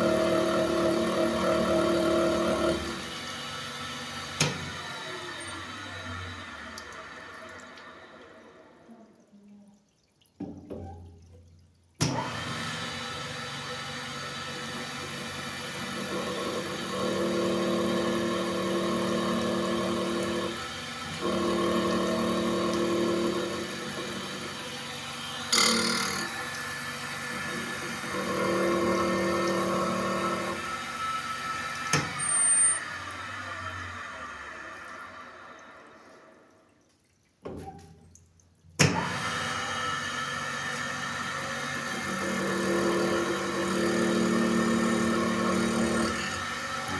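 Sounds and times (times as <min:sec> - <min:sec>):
sharpening machine motor running: 0:25.4 - 0:32.9.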